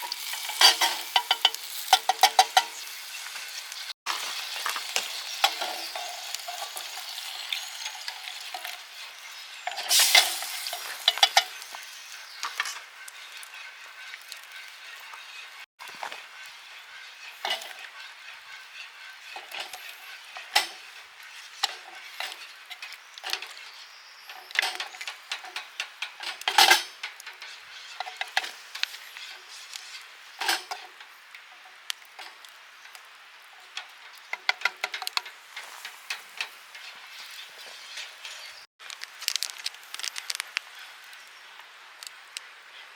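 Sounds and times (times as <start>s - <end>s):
utensils clinking on metal cookware: 0.0s - 15.3s, 17.2s - 21.0s, 21.6s - 28.6s.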